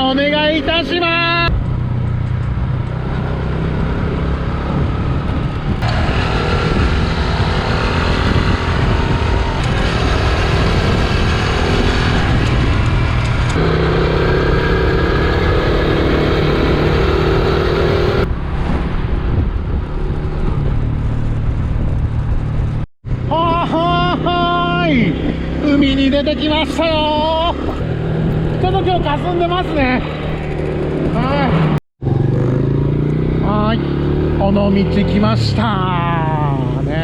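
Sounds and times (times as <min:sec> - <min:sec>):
road and wind rush: 0:00.0 - 0:37.0.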